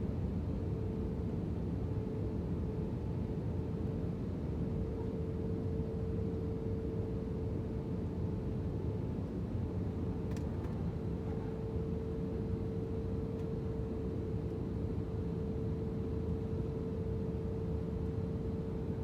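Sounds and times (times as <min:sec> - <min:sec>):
constant hum-like tone: 0:00.0 - 0:19.0
airliner cabin engine rumble: 0:00.1 - 0:19.0
faint click: 0:10.3 - 0:10.8.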